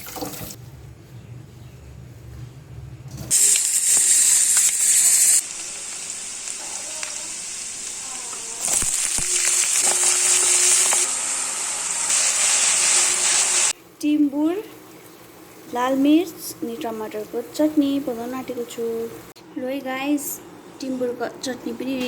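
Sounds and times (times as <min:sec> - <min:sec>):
food sizzling in hot oil: 0:03.3 - 0:13.8.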